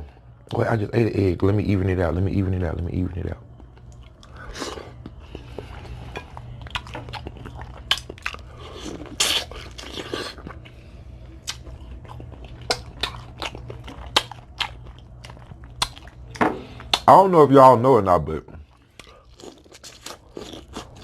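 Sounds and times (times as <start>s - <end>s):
chewing with crunches: 3.5s - 17.1s, 18.6s - 21.0s.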